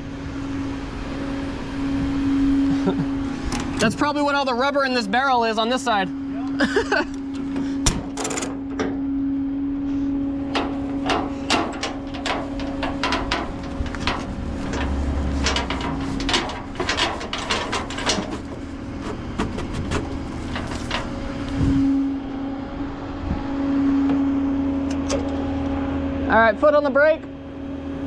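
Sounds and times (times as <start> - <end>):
engine humming: 0.0 - 28.0
metal clicks and clanks of hooks: 8.1 - 8.9.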